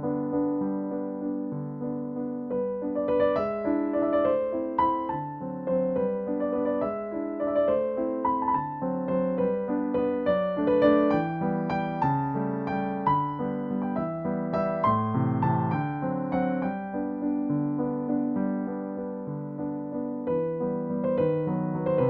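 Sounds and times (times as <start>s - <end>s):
electric piano playing gentle tune: 0.0s - 22.0s.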